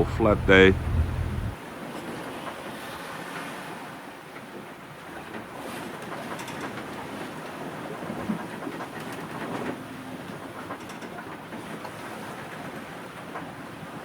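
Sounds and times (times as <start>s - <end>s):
steady rushing noise: 0.0s - 1.6s.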